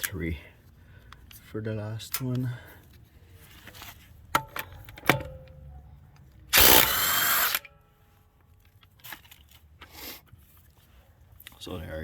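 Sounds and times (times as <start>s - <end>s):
impact wrench hammering: 4.4s - 5.6s, 6.6s - 7.7s.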